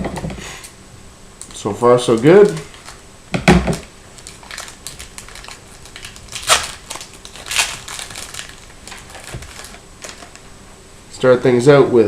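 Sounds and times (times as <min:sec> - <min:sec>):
foil card pack crinkling: 0:01.5 - 0:03.0, 0:03.8 - 0:10.5
foil pack ripping: 0:02.0 - 0:03.0, 0:04.1 - 0:10.5.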